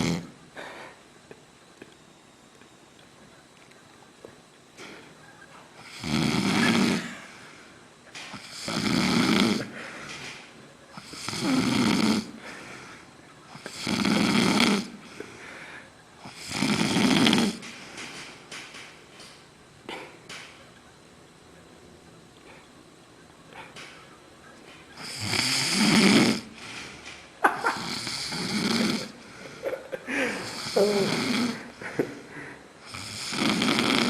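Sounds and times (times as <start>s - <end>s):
man snoring loudly: 0.0s - 0.4s, 5.8s - 7.1s, 8.4s - 9.7s, 11.0s - 12.4s, 13.6s - 15.0s, 16.3s - 17.6s, 25.0s - 26.5s, 27.7s - 29.3s, 30.3s - 31.7s, 32.8s - 34.0s
quiet breathing: 0.0s - 1.4s, 4.8s - 6.0s, 6.6s - 18.5s, 22.4s - 22.8s, 23.5s - 24.2s, 24.9s - 27.2s, 28.3s - 34.0s.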